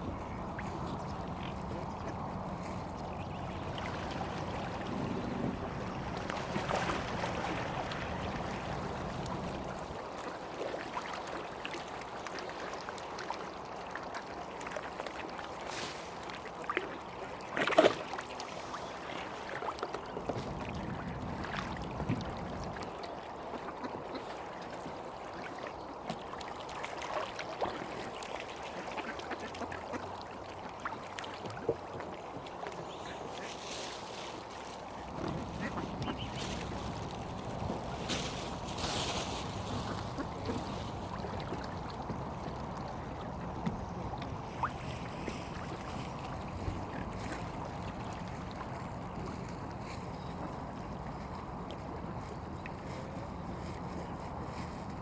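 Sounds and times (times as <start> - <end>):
ducks quacking: 35.2 - 36.5.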